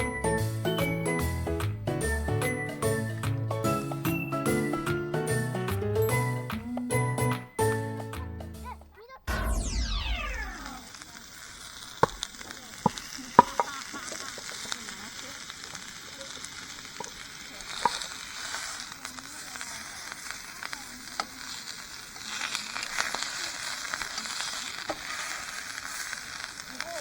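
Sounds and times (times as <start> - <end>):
steady sizzling hiss: 9.3 - 27.0
sharp clicks and taps: 12.0 - 13.7.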